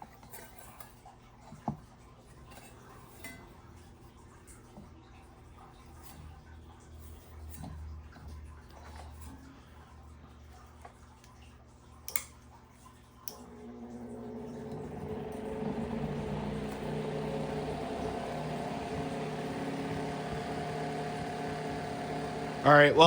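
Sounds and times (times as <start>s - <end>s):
electric fan motor humming: 13.2s - 23.0s.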